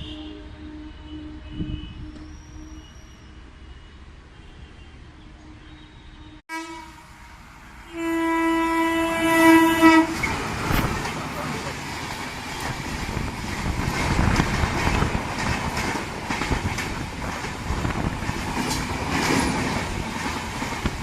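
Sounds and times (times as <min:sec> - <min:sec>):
locomotive horn blast: 0:00.0 - 0:03.0, 0:04.4 - 0:11.0
approaching train rushing: 0:06.5 - 0:21.0.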